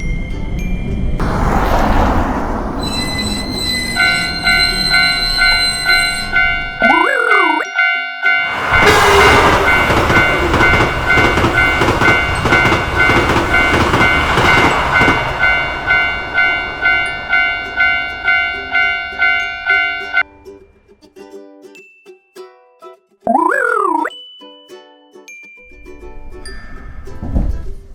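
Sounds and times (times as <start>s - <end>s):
level-crossing warning bell clanging: 2.9s - 20.2s
train wheels clattering over track: 8.6s - 15.8s.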